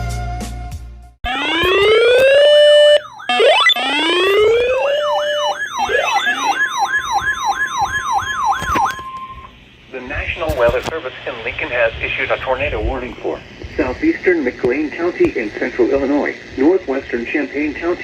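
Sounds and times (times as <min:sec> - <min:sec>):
electronic siren wailing and yelping: 0:01.2 - 0:09.6.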